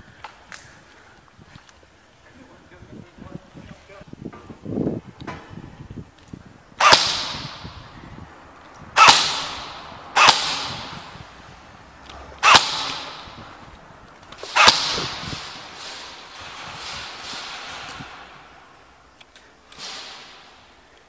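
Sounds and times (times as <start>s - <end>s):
airsoft gun shots: 6.8s - 7.9s, 9.0s - 11.3s, 12.4s - 13.6s, 14.4s - 18.6s, 19.7s - 20.6s.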